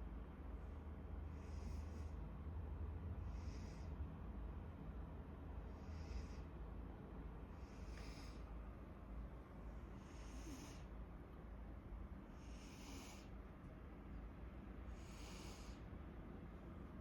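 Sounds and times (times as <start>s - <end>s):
snoring: 12.5s - 13.3s.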